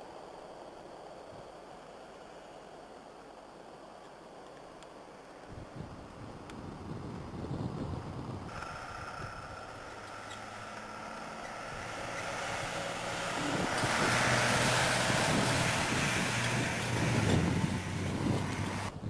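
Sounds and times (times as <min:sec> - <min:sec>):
vehicle engine running: 0:08.1 - 0:19.0.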